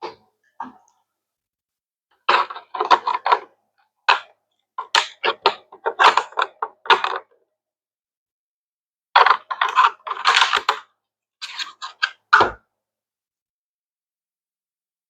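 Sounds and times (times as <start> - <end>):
plastic parts clattering together: 9.2 - 10.8.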